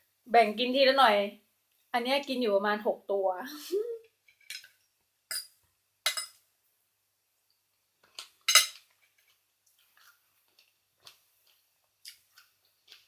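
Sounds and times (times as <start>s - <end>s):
clinks against a plate: 5.3s - 6.4s.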